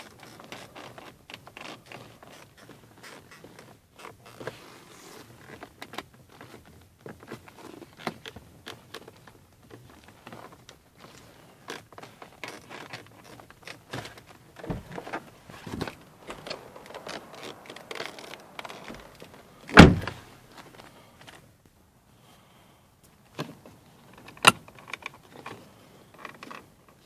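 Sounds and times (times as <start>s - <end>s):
loud thump: 19.7s - 20.3s.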